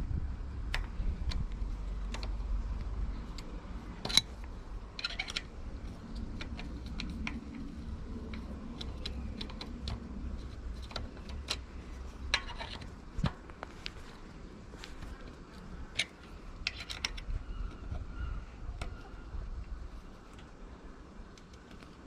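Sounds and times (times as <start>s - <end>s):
light metallic clicks and taps: 0.7s - 14.1s
small metallic rattling: 0.8s - 20.5s.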